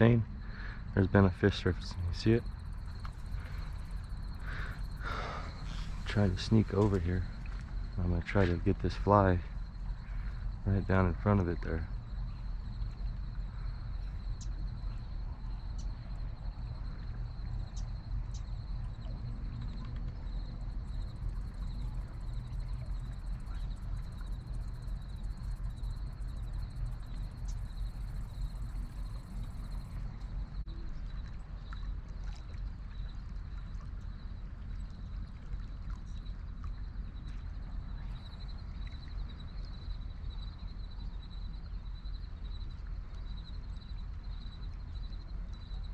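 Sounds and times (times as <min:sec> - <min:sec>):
thin steady high tone: 0:00.0 - 0:16.4, 0:20.5 - 0:30.1
wind rumble on microphone: 0:00.0 - 0:45.9.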